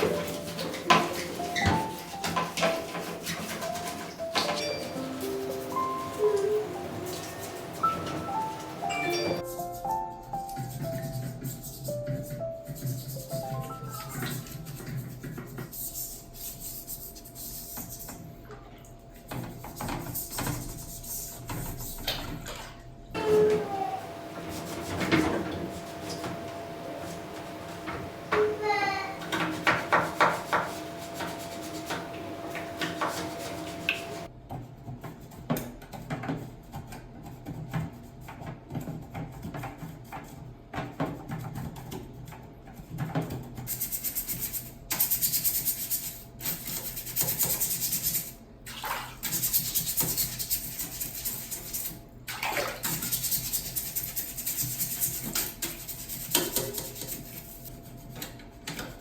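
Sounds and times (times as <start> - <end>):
scrubbing: 0.0 - 9.9, 23.3 - 34.3.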